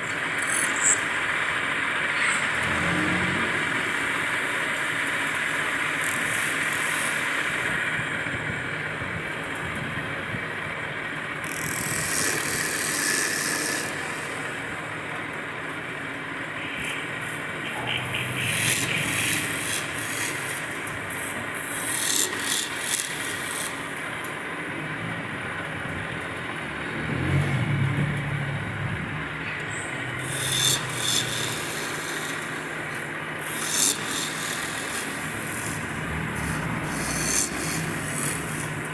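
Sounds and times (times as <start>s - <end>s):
wood lathe running: 3.6s - 8.9s, 10.7s - 17.6s, 18.2s - 24.5s, 29.7s - 38.9s
tool scraping spinning wood: 11.4s - 14.7s, 16.7s - 24.3s, 29.7s - 38.9s.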